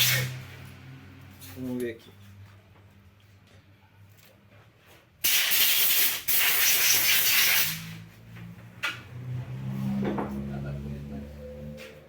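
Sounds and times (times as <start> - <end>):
pressurised spray hissing: 5.3 - 7.9.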